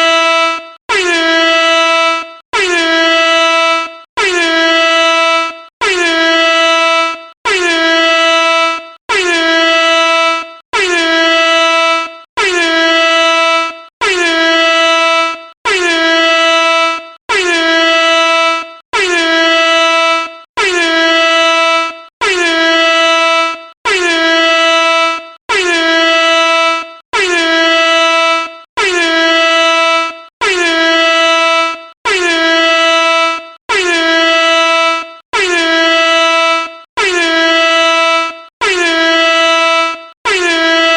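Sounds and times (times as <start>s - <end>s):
air horn blasts: 0.0s - 40.9s.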